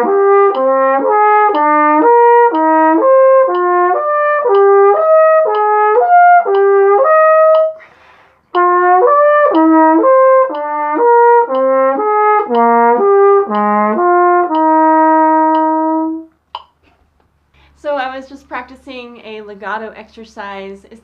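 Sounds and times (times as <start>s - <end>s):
flugelhorn playing slurred notes: 0.0s - 16.3s
quick breath: 7.8s - 8.5s, 17.5s - 17.8s.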